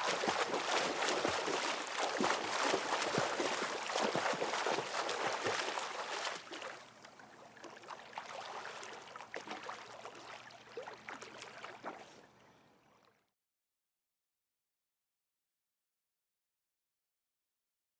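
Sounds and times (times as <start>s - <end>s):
water splashing from swimming: 0.0s - 12.4s.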